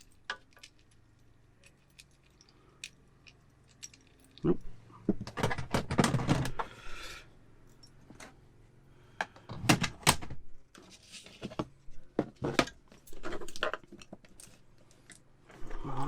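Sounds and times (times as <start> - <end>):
small hard parts clinking: 0.0 - 6.8, 12.3 - 16.0.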